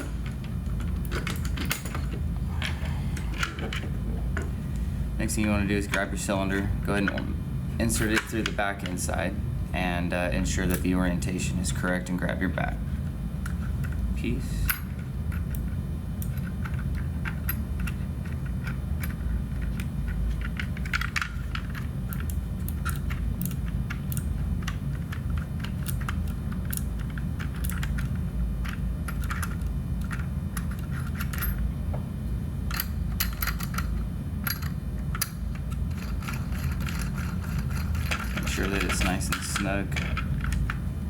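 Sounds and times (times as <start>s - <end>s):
steady low hum: 0.0s - 41.0s
small metal parts clinking: 32.7s - 40.7s.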